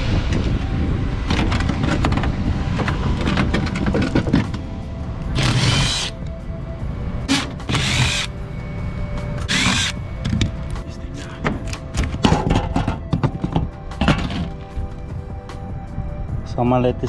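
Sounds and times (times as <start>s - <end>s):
cordless power drill bursts: 5.4s - 6.1s, 7.3s - 8.3s, 9.5s - 10.0s.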